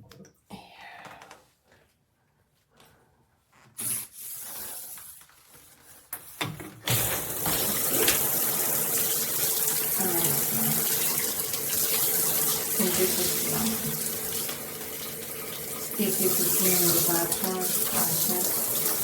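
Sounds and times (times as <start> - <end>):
shower water spraying: 6.9 - 19.0.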